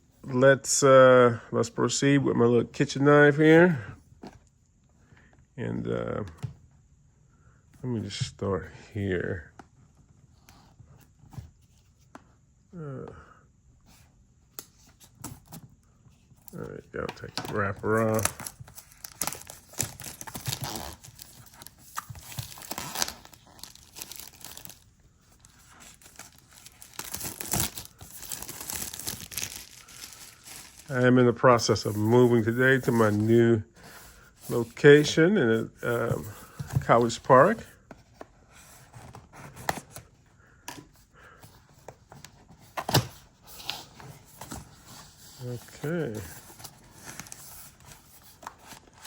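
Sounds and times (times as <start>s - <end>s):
hands handling camera packaging: 16.2s - 31.0s, 35.8s - 49.0s
plastic shrink wrap tearing: 17.9s - 21.7s, 22.3s - 24.8s, 25.9s - 31.0s.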